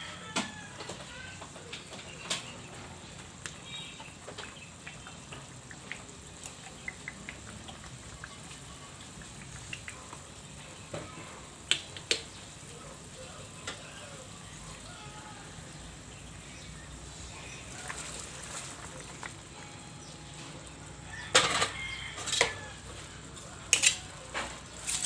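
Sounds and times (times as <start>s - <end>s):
food sizzling in a pan: 2.6s - 19.6s.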